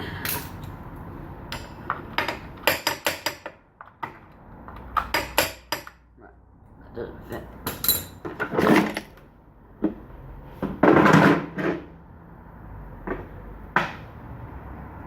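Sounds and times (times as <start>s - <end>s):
metal tools knocking and clunking: 1.5s - 6.0s, 7.3s - 9.2s.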